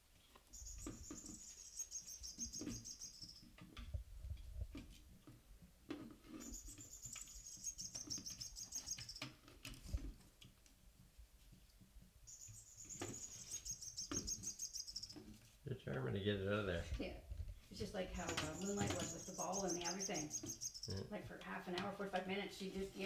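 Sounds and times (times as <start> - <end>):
toy bird twittering: 12.3 - 15.1, 18.3 - 21.0.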